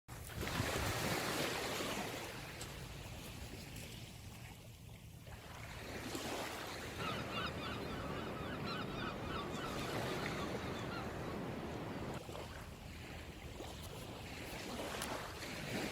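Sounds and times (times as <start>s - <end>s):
sea waves washing in: 0.2s - 15.9s
bird calling: 6.8s - 12.1s.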